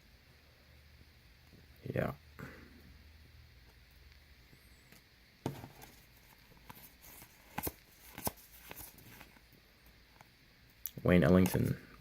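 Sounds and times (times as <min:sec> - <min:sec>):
cards rustling: 0:05.5 - 0:09.4.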